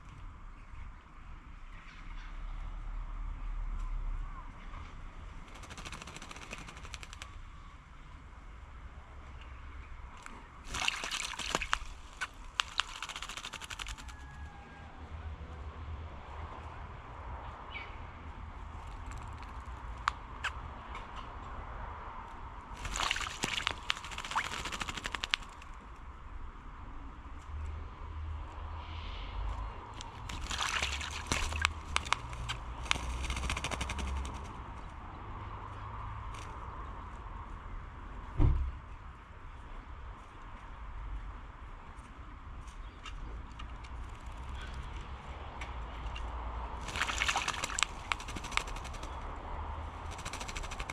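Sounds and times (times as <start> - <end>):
fluttering splashes: 5.5 - 7.4, 10.6 - 14.2, 22.8 - 25.7, 30.0 - 34.5, 46.8 - 49.2, 50.0 - 50.9
bird splashing in water: 10.6 - 14.3, 22.8 - 25.6, 30.0 - 34.4, 46.8 - 49.2, 50.0 - 50.9.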